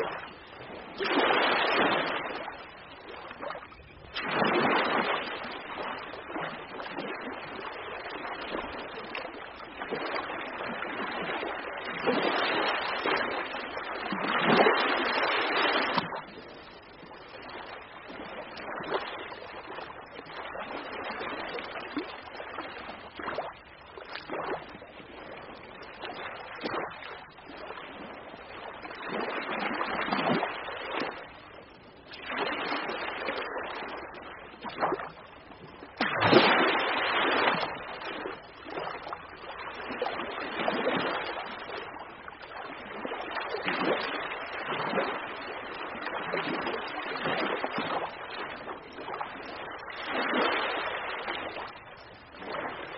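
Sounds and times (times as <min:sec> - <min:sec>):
ocean waves breaking: 0:00.0 - 0:16.2, 0:35.8 - 0:39.2, 0:42.9 - 0:52.9.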